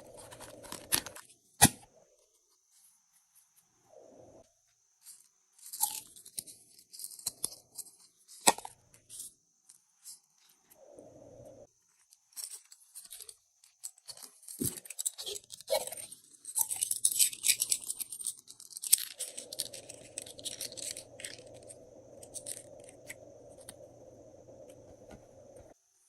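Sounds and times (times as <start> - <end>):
faint high whine: 2.0 - 5.3, 10.0 - 12.0, 19.2 - 26.0.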